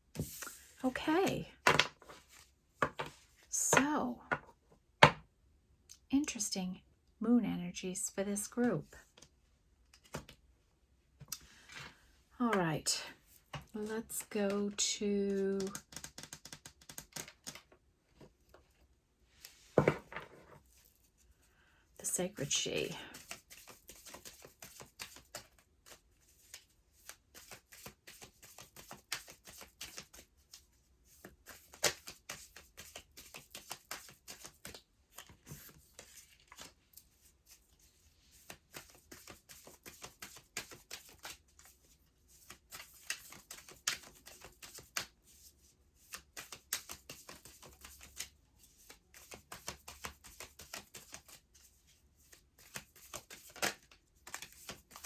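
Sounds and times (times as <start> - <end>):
cards being shuffled: 10.0 - 10.4, 15.3 - 17.7, 22.5 - 55.0.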